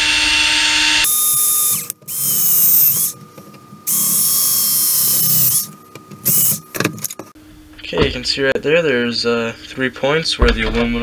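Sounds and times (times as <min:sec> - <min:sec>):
electric drill whining: 0:00.0 - 0:03.2, 0:03.9 - 0:06.6.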